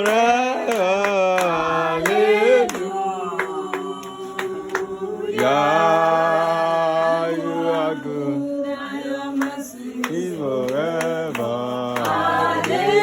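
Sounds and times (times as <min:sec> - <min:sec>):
hands clapping in time: 0:00.0 - 0:06.5, 0:09.4 - 0:13.0
group singing worship chorus: 0:00.0 - 0:13.0.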